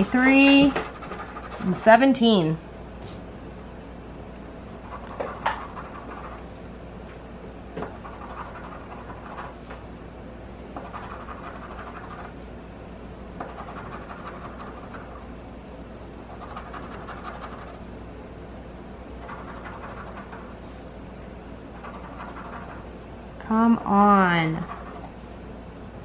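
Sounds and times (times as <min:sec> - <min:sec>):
scratching lottery ticket: 0:00.0 - 0:01.8, 0:04.8 - 0:06.6, 0:08.0 - 0:09.6, 0:10.8 - 0:12.4, 0:13.5 - 0:15.3, 0:16.3 - 0:17.8, 0:19.2 - 0:20.6, 0:21.8 - 0:23.0, 0:24.5 - 0:25.2.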